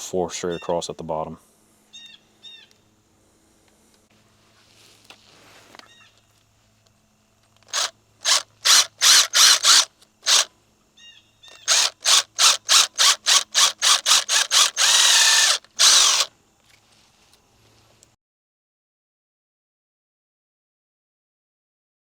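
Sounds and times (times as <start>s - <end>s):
power drill drilling into plastic: 7.6s - 10.5s, 11.5s - 16.3s.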